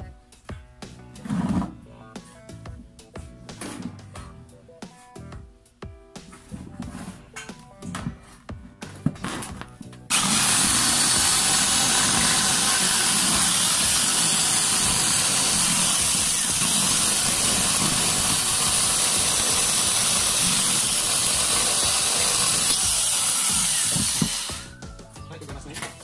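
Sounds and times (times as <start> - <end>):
background music: 0.0 - 26.0
power tool cutting: 10.1 - 24.8.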